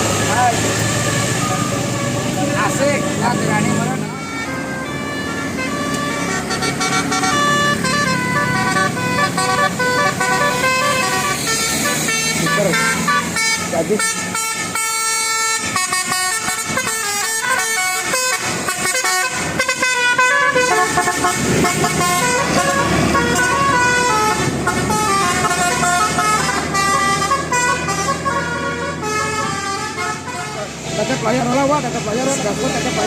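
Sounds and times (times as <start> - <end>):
musical air horns playing: 0.8 - 31.5.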